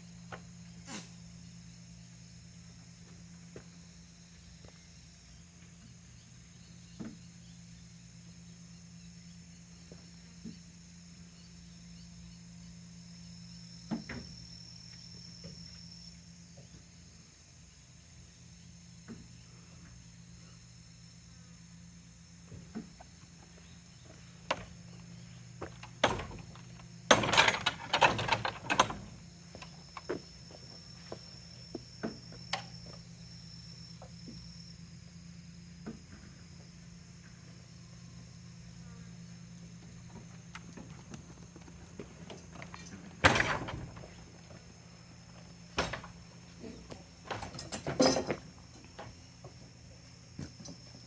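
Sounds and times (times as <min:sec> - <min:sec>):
insects trilling: 0:00.0 - 0:51.0
rattling knocks: 0:24.5 - 0:24.8, 0:25.6 - 0:30.2.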